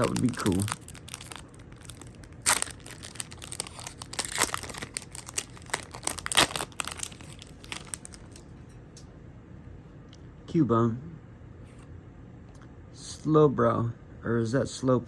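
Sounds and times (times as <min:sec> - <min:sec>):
trading cards and foil wrapper crinkling: 0:00.0 - 0:08.4.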